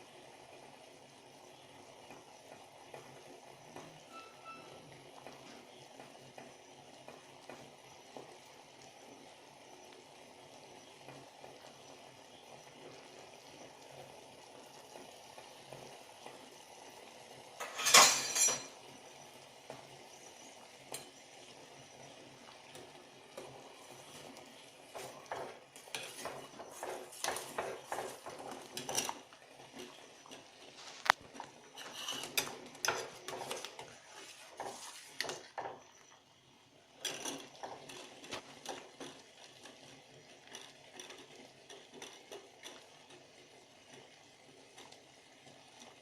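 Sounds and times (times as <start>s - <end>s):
metal utensils clattering on pot: 17.6s - 18.8s, 25.0s - 35.7s, 37.0s - 39.7s
utensils clinking and scraping: 17.6s - 18.8s, 25.0s - 35.5s.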